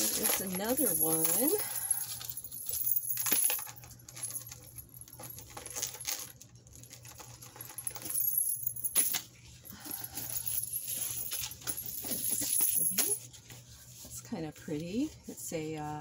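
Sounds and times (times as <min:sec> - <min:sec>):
metal jewelry clinking: 0:00.0 - 0:13.3.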